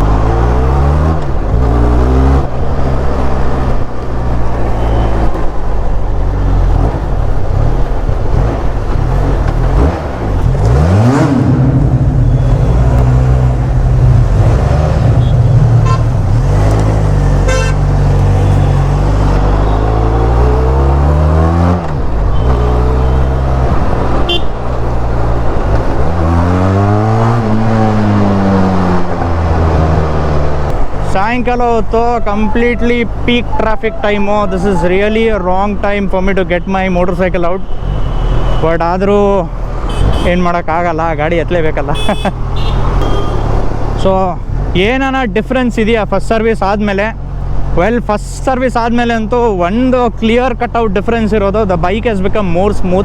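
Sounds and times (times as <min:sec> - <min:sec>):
motorcycle engine revving: 0:06.3 - 0:35.5
car horn toots: 0:15.1 - 0:16.2, 0:17.4 - 0:18.9, 0:22.3 - 0:23.4, 0:24.3 - 0:24.6, 0:32.2 - 0:35.0, 0:39.9 - 0:40.4, 0:41.9 - 0:43.6.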